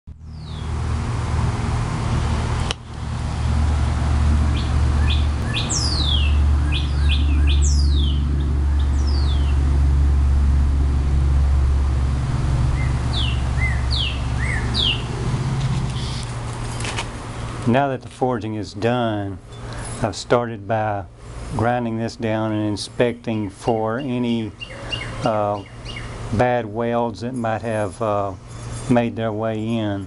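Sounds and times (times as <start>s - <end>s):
birds chirping: 0.3s - 0.8s, 4.2s - 10.0s, 12.6s - 17.6s, 21.8s - 30.0s
low rumble: 1.0s - 16.6s.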